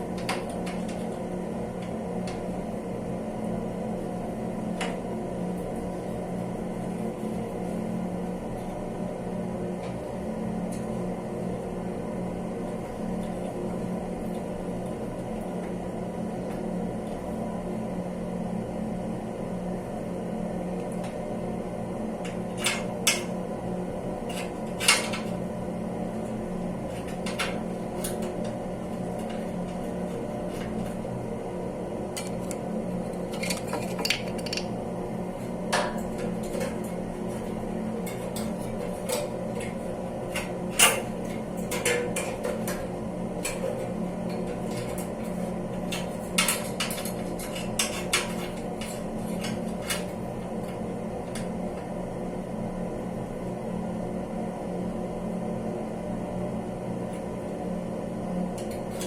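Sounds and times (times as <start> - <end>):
low mechanical hum: 0.0 - 59.0
clicks and clinks of hard objects: 33.3 - 34.7.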